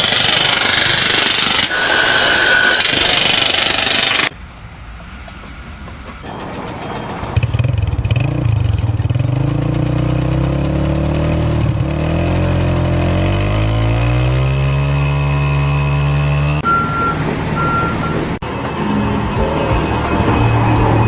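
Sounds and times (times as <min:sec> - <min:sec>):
engine running and revving: 0:06.3 - 0:21.0.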